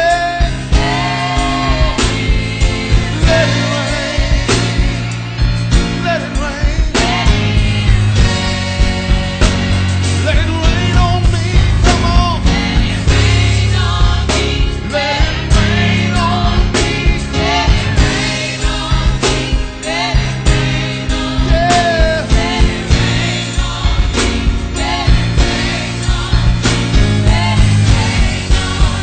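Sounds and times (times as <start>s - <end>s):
group singing: 0.0s - 5.6s, 6.7s - 10.4s, 11.8s - 29.0s
bass notes: 0.0s - 29.0s
drum beat: 0.0s - 29.0s.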